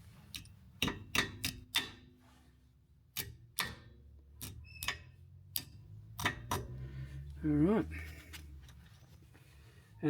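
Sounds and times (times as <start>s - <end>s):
pliers clicking on metal: 0.3s - 1.9s, 3.1s - 6.7s.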